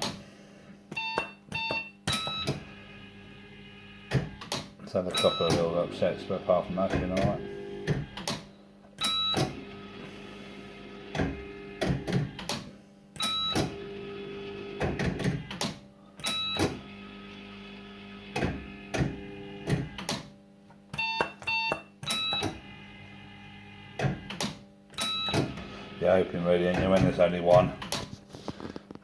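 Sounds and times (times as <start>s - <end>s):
steady electrical hum: 0.0s - 29.0s
mechanical clicks and clunks: 0.9s - 2.8s, 4.0s - 9.8s, 11.0s - 13.9s, 14.7s - 22.8s, 23.9s - 25.7s, 26.4s - 28.2s.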